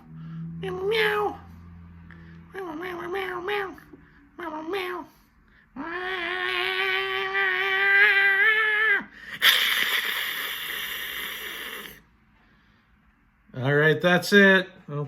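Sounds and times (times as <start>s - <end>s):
man imitating cat meow: 5.8s - 11.9s.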